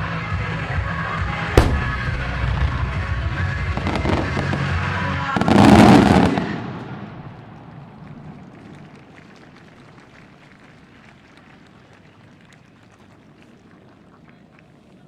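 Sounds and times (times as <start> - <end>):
fireworks exploding: 1.6 - 4.3.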